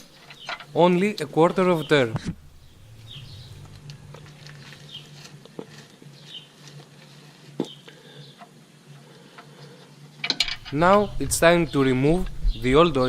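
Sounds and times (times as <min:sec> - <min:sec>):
bird chirping: 0:00.0 - 0:00.9, 0:01.5 - 0:04.0, 0:04.8 - 0:05.2, 0:05.9 - 0:06.6
low steady hum: 0:00.0 - 0:13.0.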